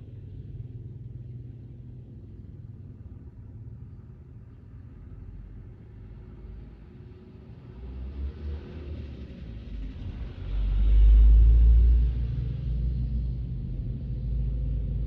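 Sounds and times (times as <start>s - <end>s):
deep low rumble: 9.8s - 15.0s.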